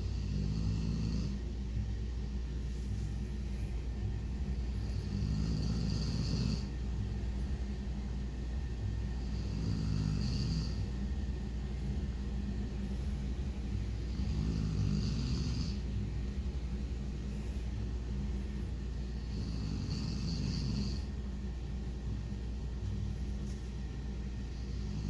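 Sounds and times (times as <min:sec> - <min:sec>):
dog snoring: 0:00.0 - 0:01.5, 0:04.4 - 0:07.0, 0:08.9 - 0:11.3, 0:12.8 - 0:16.4, 0:19.0 - 0:21.2, 0:24.5 - 0:25.0
steady low hum: 0:00.0 - 0:25.0.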